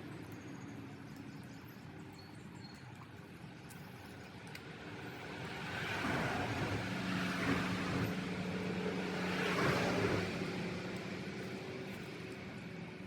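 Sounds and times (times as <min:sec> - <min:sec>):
passing vehicle engine hum: 0:05.3 - 0:13.0.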